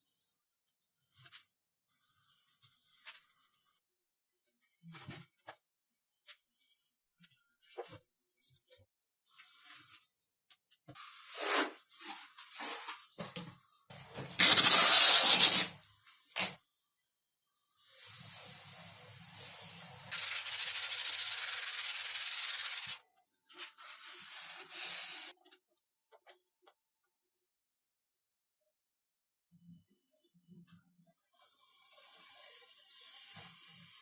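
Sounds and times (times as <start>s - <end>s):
hand rubbing and scraping foam: 11.0s - 13.0s, 14.3s - 15.8s, 20.1s - 23.0s, 23.6s - 25.3s.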